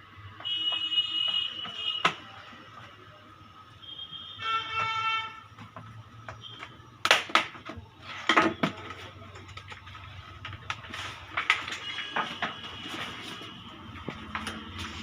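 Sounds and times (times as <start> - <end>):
vehicle horn honk: 0.4 - 2.1, 3.8 - 5.4, 11.8 - 13.6.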